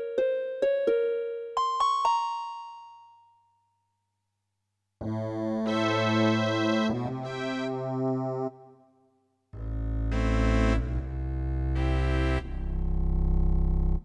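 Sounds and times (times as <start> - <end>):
electronic keyboard notes: 5.0 - 8.7, 9.6 - 14.0
held keyboard chord: 5.0 - 8.7, 9.6 - 14.0.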